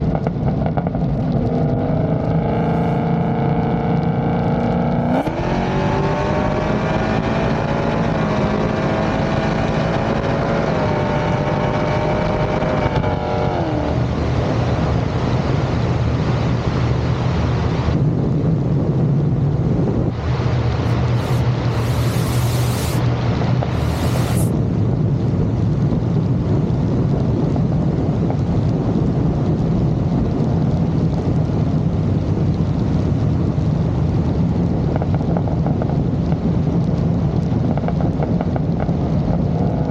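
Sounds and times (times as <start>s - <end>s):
car engine accelerating hard: 0.0s - 15.3s, 20.2s - 24.5s
road and wind rumble: 0.0s - 39.9s.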